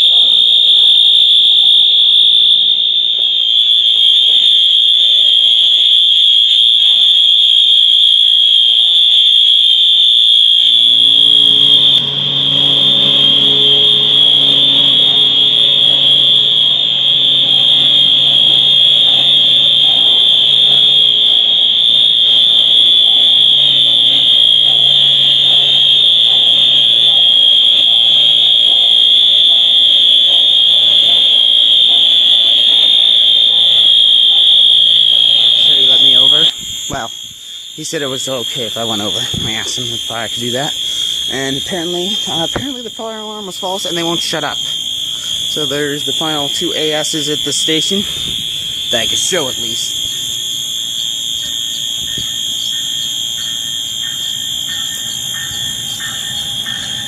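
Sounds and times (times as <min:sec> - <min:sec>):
fire alarm horn tone: 0:00.0 - 0:57.0
low hum: 0:10.5 - 0:37.0.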